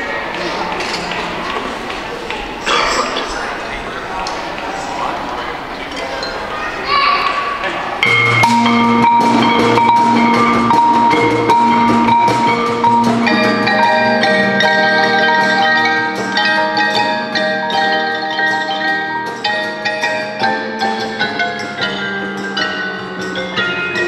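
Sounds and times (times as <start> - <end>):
pitched mallet percussion ensemble: 8.0 - 24.0.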